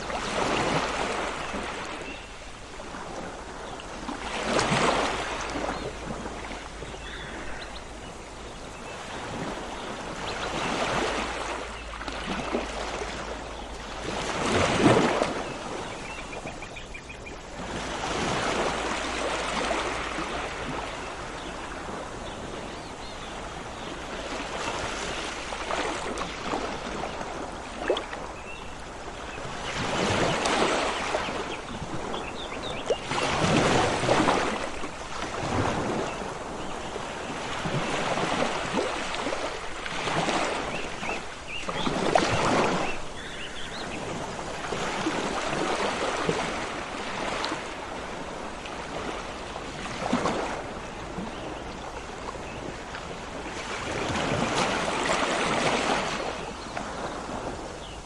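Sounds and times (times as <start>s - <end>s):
sea waves breaking: 0.0s - 16.6s, 17.4s - 58.0s.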